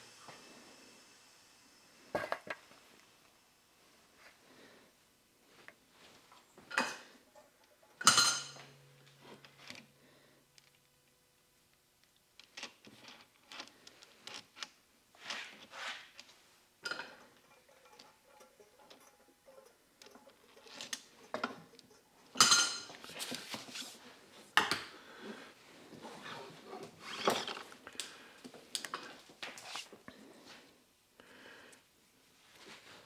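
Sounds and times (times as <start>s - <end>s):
metal parts and tools clinking: 6.7s - 9.9s.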